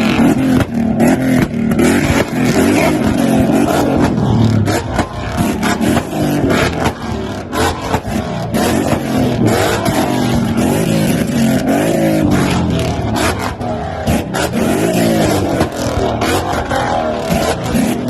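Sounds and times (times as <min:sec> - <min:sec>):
car engine revving hard: 0:00.0 - 0:18.0
exhaust cracks and pops: 0:15.1 - 0:18.0.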